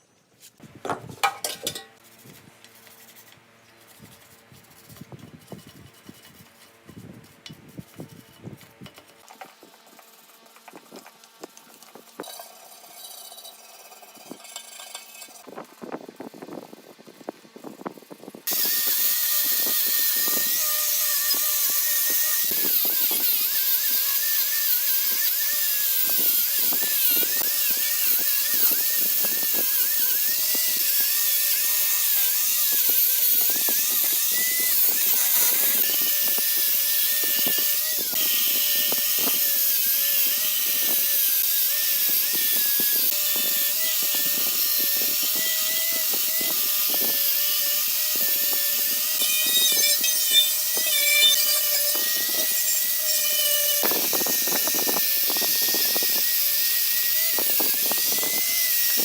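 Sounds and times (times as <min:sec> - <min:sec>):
power tool running: 0:18.4 - 0:59.0.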